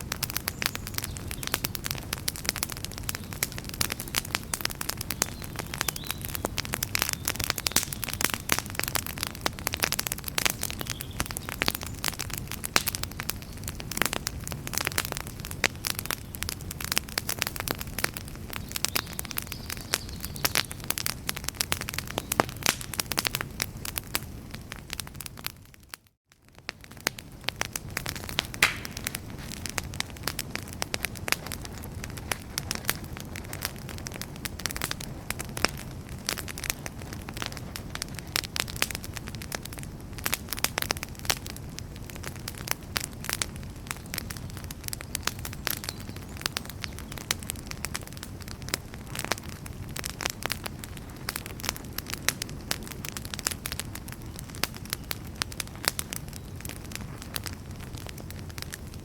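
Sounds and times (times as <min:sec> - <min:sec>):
campfire crackling and popping: 0:00.0 - 0:59.0
low rumble of flame: 0:00.0 - 0:59.0.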